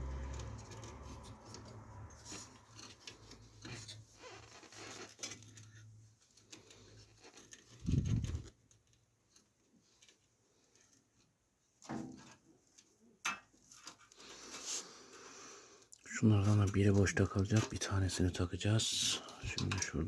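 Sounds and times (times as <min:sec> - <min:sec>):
cable clicks and scrapes: 0:00.0 - 0:11.0.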